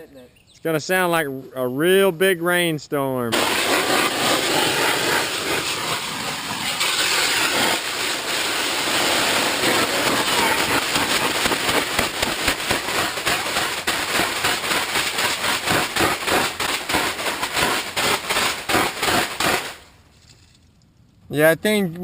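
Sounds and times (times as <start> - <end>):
water spraying on tent fabric: 3.3 - 19.8.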